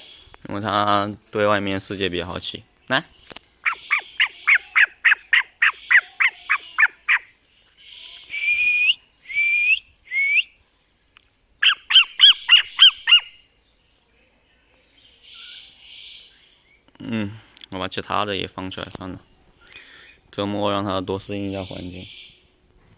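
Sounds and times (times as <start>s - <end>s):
cockatiel calling: 3.6s - 8.6s, 11.6s - 13.4s.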